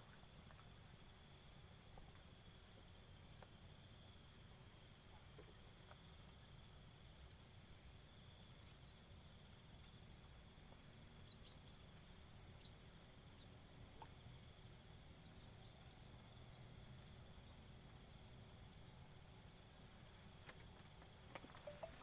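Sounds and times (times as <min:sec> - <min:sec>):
insect chirps: 0:00.0 - 0:22.0
insect trilling: 0:21.3 - 0:22.0.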